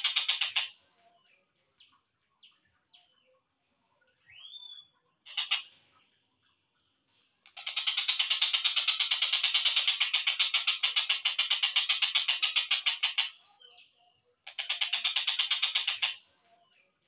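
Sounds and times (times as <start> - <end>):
kingfisher calls: 5.3 - 5.7.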